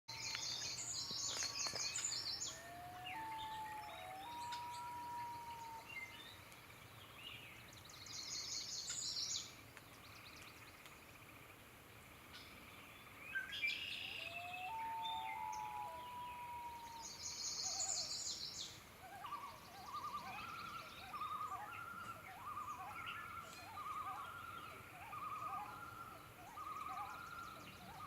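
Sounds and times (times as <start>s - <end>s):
songbirds trilling and chattering: 0.1s - 28.0s
loons wailing: 2.5s - 5.9s, 14.1s - 17.2s, 19.1s - 28.0s.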